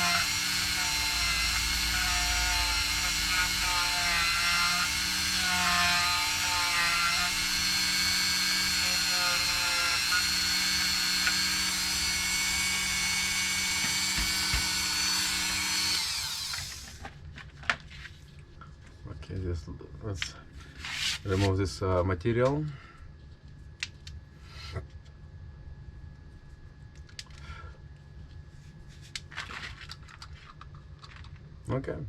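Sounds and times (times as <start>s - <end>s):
rotary tool grinding: 0.0s - 17.0s.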